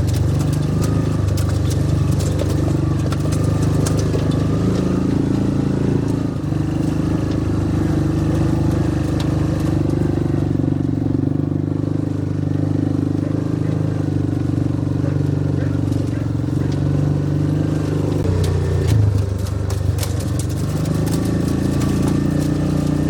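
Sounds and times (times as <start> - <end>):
light clattering and clicks: 0.0 - 5.0, 18.1 - 23.0
utility vehicle engine running: 0.0 - 23.0.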